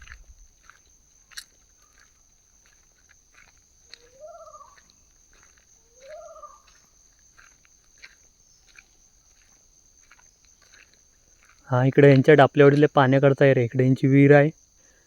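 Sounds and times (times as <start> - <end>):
bird calling: 3.9 - 7.0.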